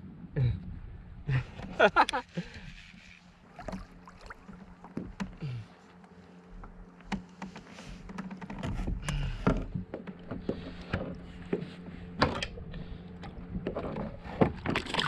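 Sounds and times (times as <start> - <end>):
faint steady hum: 0.0 - 14.8.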